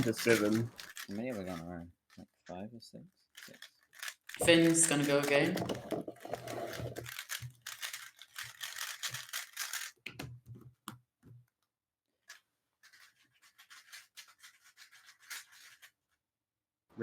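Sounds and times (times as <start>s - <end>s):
puzzle cube turns rattling: 0.0s - 2.5s, 3.3s - 10.1s, 12.2s - 16.0s.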